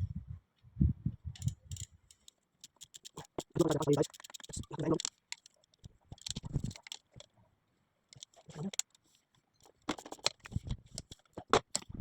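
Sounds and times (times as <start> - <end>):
socket ratchet clicking: 1.7 - 5.6.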